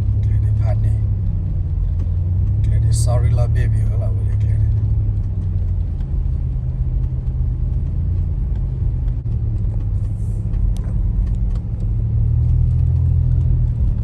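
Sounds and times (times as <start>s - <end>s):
vehicle engine rumbling: 0.0s - 14.0s
faint clicks: 4.0s - 14.0s.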